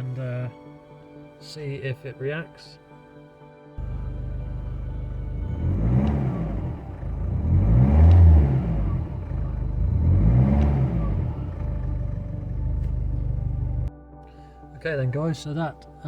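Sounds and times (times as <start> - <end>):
diesel engine idling and revving: 3.8 - 13.9.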